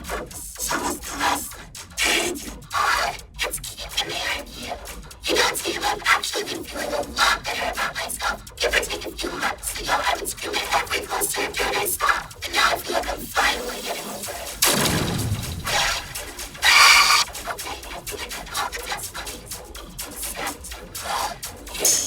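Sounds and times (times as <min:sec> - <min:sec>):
bursts of hissing white noise: 0:13.7 - 0:17.3.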